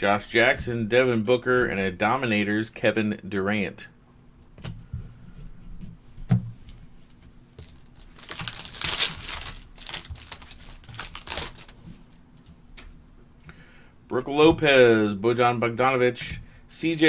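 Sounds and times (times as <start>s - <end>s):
foil wrapper tearing and crinkling: 7.6s - 11.9s.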